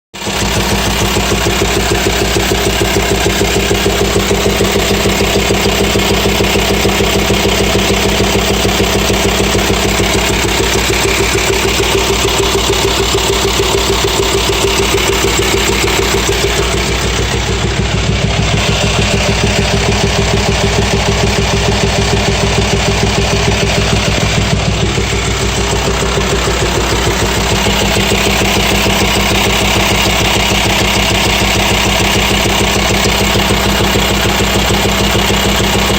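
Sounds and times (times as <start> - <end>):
diesel engine idling with rapid knock: 0.1 - 35.9.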